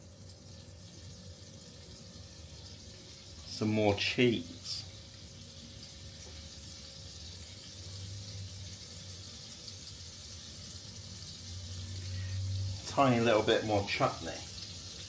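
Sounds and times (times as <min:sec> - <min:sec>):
butter sizzling in a frying pan: 0:00.0 - 0:15.0.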